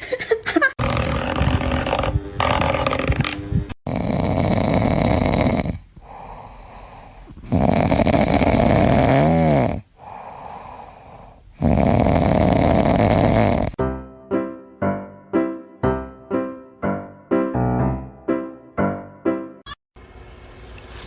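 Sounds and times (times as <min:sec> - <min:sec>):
animal snoring: 0:00.8 - 0:03.2, 0:03.9 - 0:13.8
quiet breaths: 0:05.8 - 0:07.5, 0:09.8 - 0:11.6.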